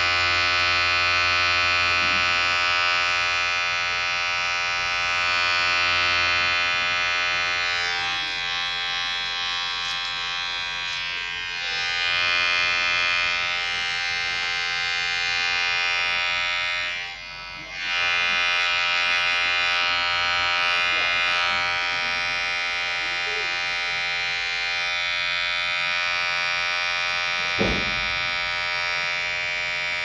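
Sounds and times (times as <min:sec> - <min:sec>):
electric hair clipper buzzing: 0:00.0 - 0:30.0.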